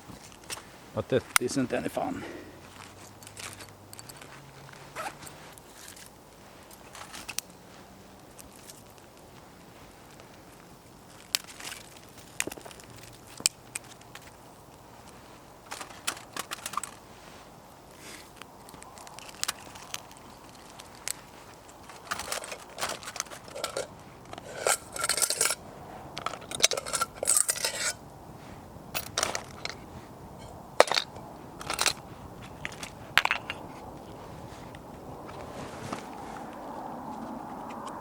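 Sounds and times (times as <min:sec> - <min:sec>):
scraping handling: 0:15.1 - 0:17.4, 0:19.0 - 0:25.6, 0:26.2 - 0:28.0
dry twigs snapping: 0:18.1 - 0:25.0.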